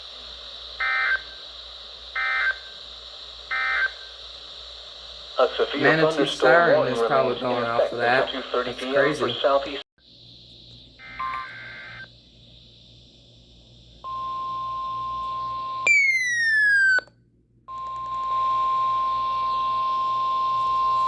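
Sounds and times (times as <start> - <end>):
radio hiss: 0.0 - 14.0
steady high alarm beep: 0.8 - 1.4, 2.1 - 2.8, 3.5 - 4.2, 11.0 - 12.1, 14.0 - 16.7, 17.7 - 21.0
falling tone: 15.9 - 17.1.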